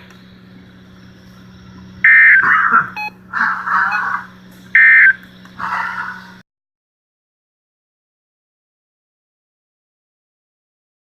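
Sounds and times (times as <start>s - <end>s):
steady low hum: 0.0s - 6.4s
loud electronic beeps: 2.0s - 3.2s, 3.9s - 5.2s.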